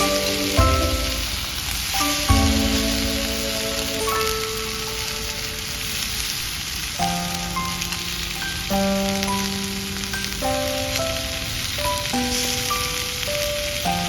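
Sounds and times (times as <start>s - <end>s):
background music chords: 0.0s - 6.4s
meat sizzling over fire: 0.0s - 14.0s.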